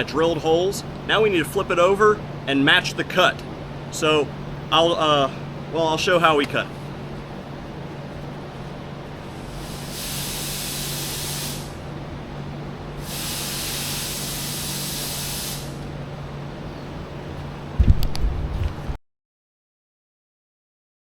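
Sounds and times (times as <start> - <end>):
pressurised spray hissing: 9.2 - 11.9, 13.0 - 15.8.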